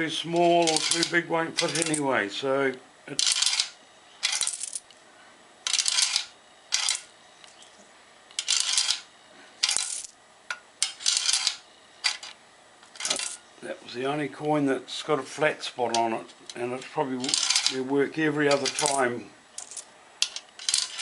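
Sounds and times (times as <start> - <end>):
coins rattling through coin slide: 0.3 - 2.0, 3.1 - 4.9, 5.6 - 7.1, 8.4 - 10.2, 10.8 - 13.4, 16.8 - 17.8, 18.5 - 21.0.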